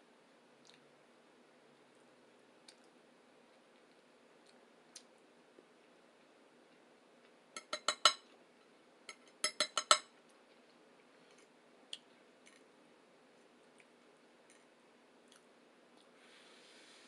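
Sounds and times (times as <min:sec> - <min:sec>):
cutlery clinking on plate: 0:07.6 - 0:08.2, 0:09.1 - 0:10.1.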